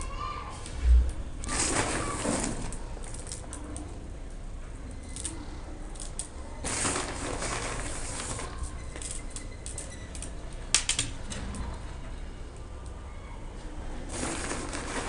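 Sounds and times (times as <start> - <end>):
rustling: 0.6 - 4.1, 5.0 - 10.5, 14.0 - 15.0
pebbles clicking and rattling: 1.4 - 11.8, 14.0 - 15.0.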